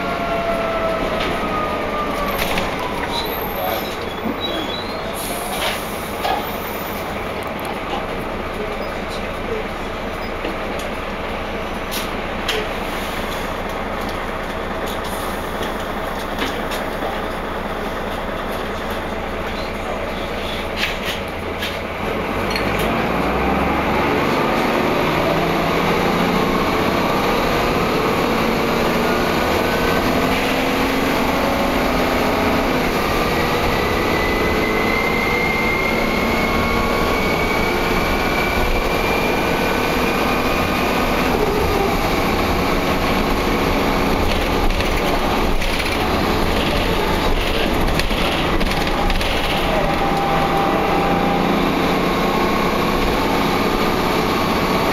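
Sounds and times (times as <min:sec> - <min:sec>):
rising engine whines: 0:00.0 - 0:07.1, 0:22.0 - 0:44.6, 0:45.2 - 0:54.9
bus engine running: 0:00.0 - 0:54.9.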